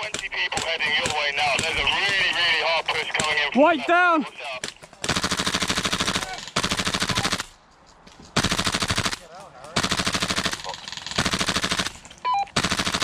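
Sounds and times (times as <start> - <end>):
airsoft rifle firing bursts: 4.8 - 7.6, 8.4 - 13.0.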